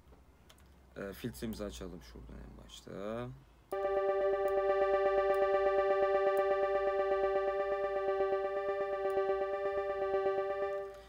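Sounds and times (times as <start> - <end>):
pulsing synth note: 3.8 - 11.0.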